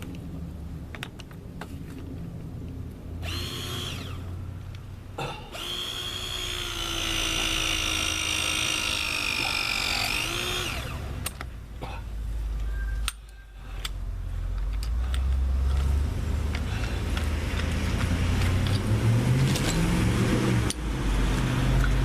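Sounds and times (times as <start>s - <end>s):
power tool motor whining: 3.2s - 4.3s, 5.5s - 11.3s.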